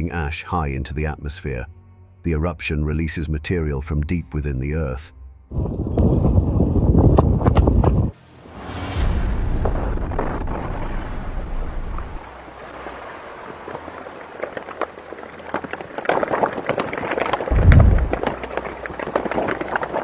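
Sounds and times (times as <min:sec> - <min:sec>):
heavy low thump: 0:05.2 - 0:12.2, 0:17.5 - 0:18.3
volcanic eruption rumble: 0:05.5 - 0:20.0
hiss with crackles and pops: 0:07.9 - 0:20.0.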